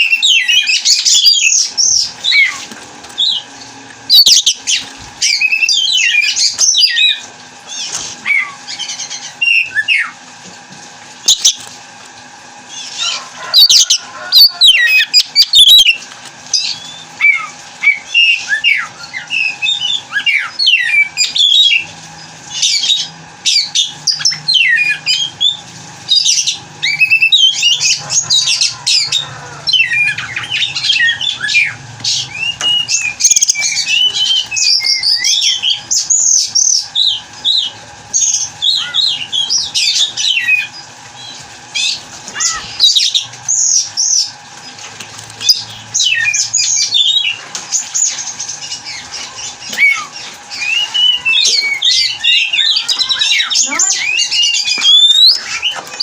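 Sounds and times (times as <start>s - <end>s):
bird singing whistles and chatter: 48.0s - 55.8s.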